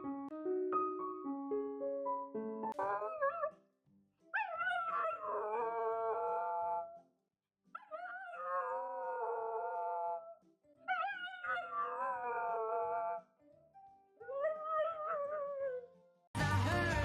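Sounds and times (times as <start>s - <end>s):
dog howling: 2.8s - 3.5s, 4.4s - 7.0s, 7.8s - 13.2s.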